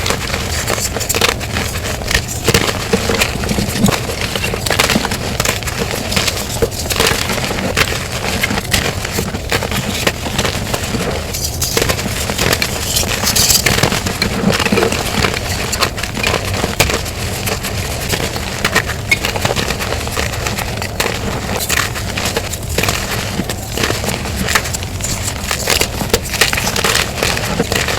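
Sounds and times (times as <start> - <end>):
chalk crunching by hand: 0.0 - 27.9.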